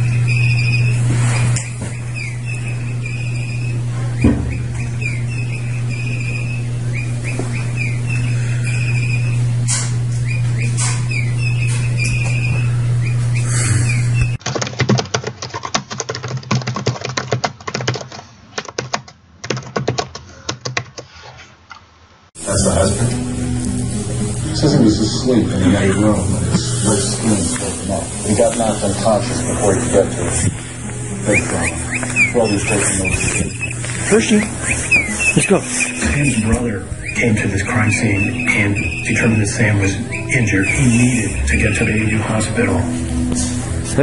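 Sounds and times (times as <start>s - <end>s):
bird toy chirping: 0.0s - 9.4s, 10.2s - 14.4s, 31.3s - 36.4s, 37.0s - 42.0s
steady low hum: 0.0s - 14.4s, 22.4s - 44.0s
rapid clicks and rustles: 14.4s - 21.8s.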